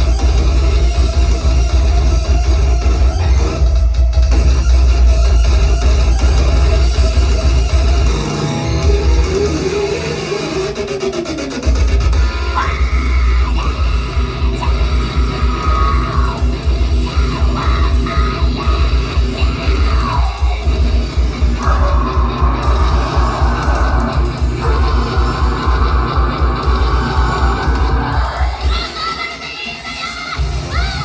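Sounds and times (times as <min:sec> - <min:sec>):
pounding bass drum: 0:00.0 - 0:29.1
electric guitar: 0:00.0 - 0:31.0
live heavy rock song: 0:00.0 - 0:31.0
person yelling vocals: 0:12.6 - 0:20.6, 0:21.6 - 0:29.5.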